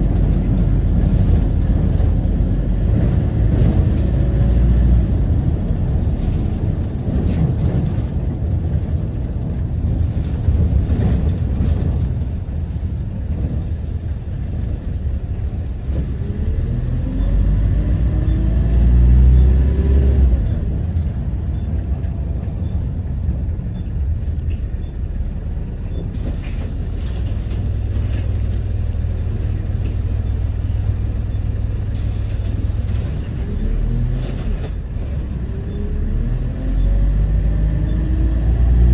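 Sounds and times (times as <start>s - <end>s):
bus engine rumble and whine: 0.0s - 38.9s
brake release hiss: 26.1s - 28.6s, 31.9s - 34.5s.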